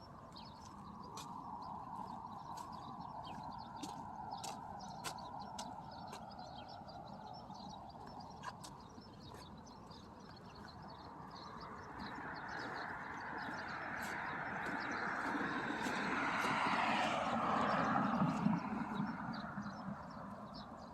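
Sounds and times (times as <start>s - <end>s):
birds chirping: 0.0s - 20.9s
passing engine: 11.7s - 20.9s.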